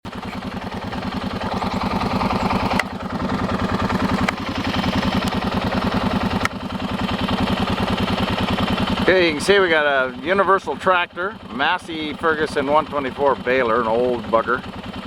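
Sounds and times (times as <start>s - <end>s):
tractor engine running: 0.0s - 15.0s
hay baler pulsing: 0.1s - 15.0s.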